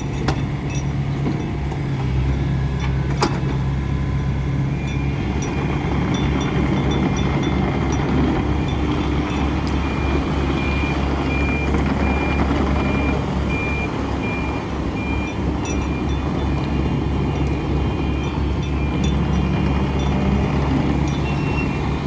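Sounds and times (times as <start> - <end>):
excavator diesel engine running: 0.0 - 22.0
travel alarm beeping: 4.1 - 22.0.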